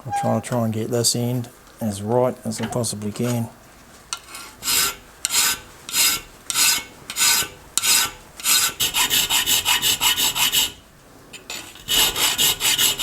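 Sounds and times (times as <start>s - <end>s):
file rasping on metal: 4.2s - 10.8s, 11.5s - 13.0s.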